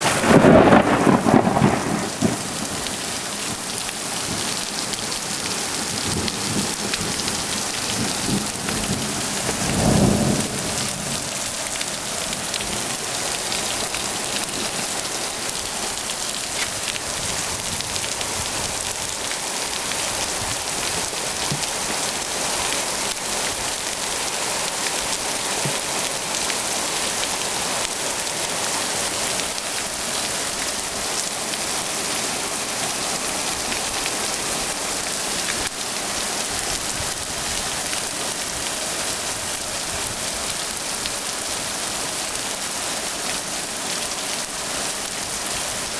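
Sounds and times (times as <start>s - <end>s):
thunder rumbling: 0.0s - 4.6s, 5.8s - 12.8s
heavy rain pouring: 0.0s - 45.9s.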